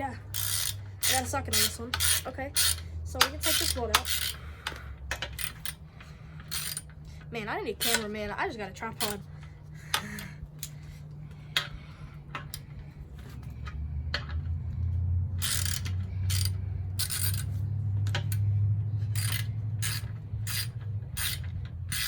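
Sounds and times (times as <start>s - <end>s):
socket wrench clicking: 0.3s - 5.8s, 6.4s - 7.0s, 7.8s - 8.1s, 15.4s - 22.0s.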